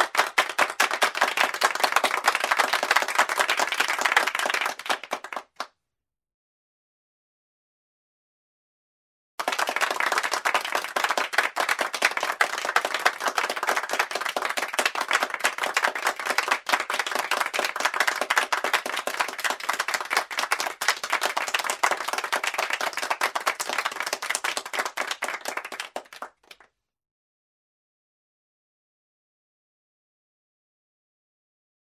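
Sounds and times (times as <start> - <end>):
people clapping: 0.0 - 5.8, 9.4 - 26.7.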